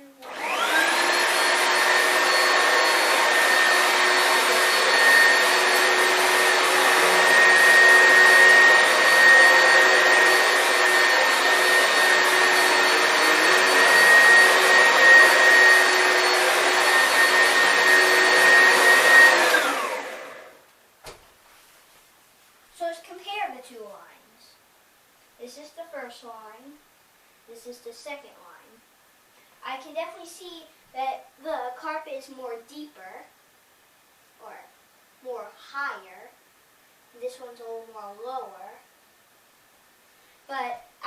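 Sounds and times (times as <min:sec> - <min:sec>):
vacuum cleaner motor whine: 0:00.2 - 0:20.6.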